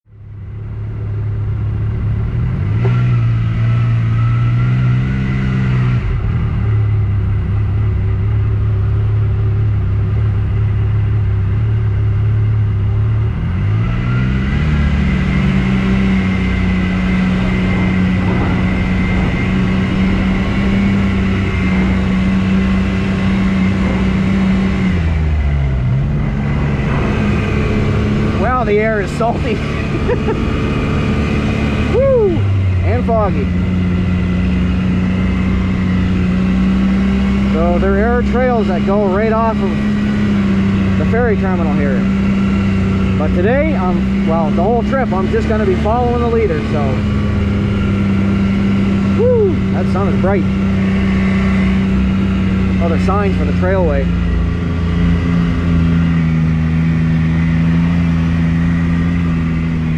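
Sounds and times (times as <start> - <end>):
off-road vehicle engine: 0.0 - 59.9.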